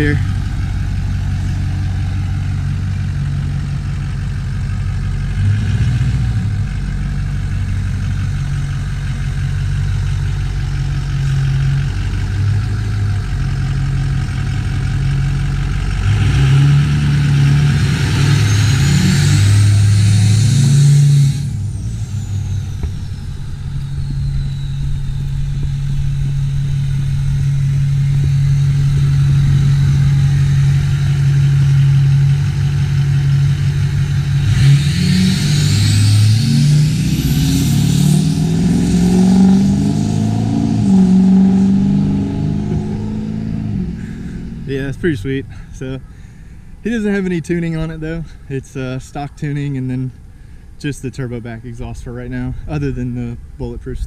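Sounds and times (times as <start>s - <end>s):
diesel truck engine: 0.0s - 54.0s
turbo whistle: 21.1s - 30.9s.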